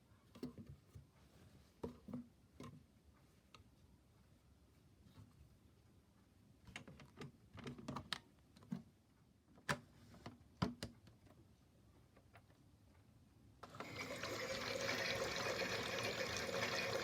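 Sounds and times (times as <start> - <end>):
light plastic clicks and knocks: 6.6 - 8.9.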